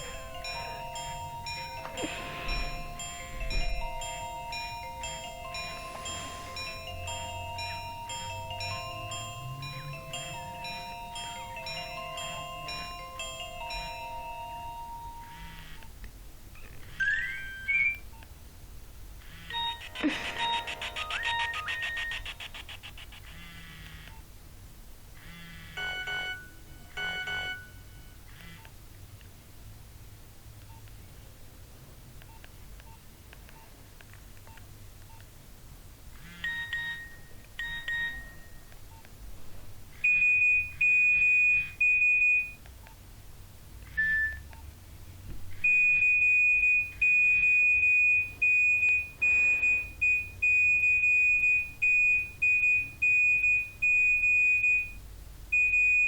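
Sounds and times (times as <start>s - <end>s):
fast high-pitched phone beeping: 0.0s - 15.8s, 19.4s - 24.2s, 25.8s - 28.1s, 36.2s - 38.7s
phone ringtone chimes: 0.0s - 15.8s, 16.9s - 18.0s, 19.5s - 23.7s, 25.8s - 28.2s, 36.2s - 38.7s.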